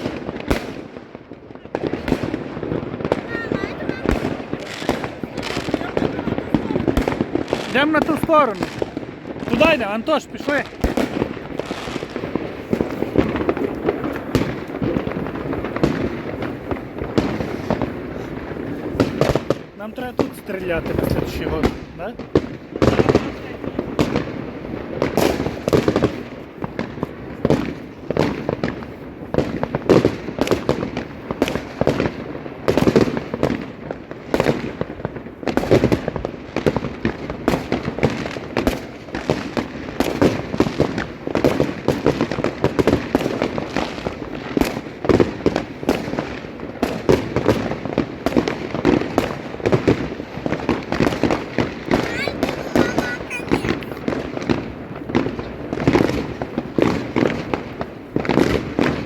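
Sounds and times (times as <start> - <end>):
fireworks bangs and crackles: 0.0 - 59.0.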